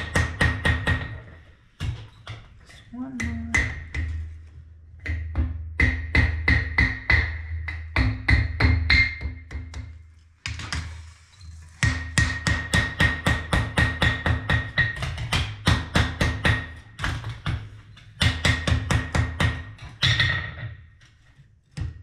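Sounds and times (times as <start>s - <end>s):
hammer striking iron on anvil: 11.8s - 16.7s.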